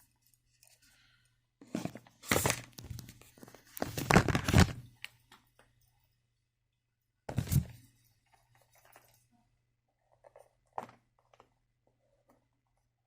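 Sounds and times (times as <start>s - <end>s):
packaging rustling: 1.7s - 4.9s.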